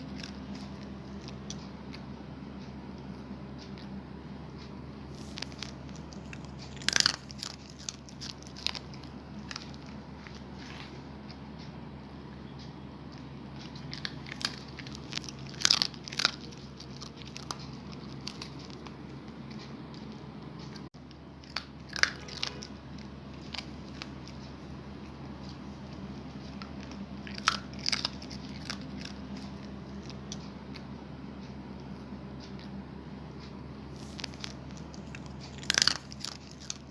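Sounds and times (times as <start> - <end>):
puppy crunching hard snack: 0.0 - 2.1, 5.1 - 11.4, 13.6 - 20.8, 21.4 - 24.5, 26.4 - 30.9, 34.0 - 36.9
steady low hum: 0.0 - 36.9.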